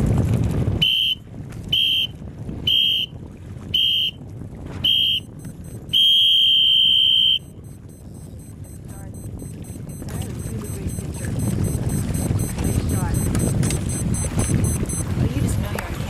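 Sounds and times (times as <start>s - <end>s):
wind on microphone: 0.0s - 16.0s
long beep: 4.9s - 15.1s
short high beeps: 4.9s - 15.1s.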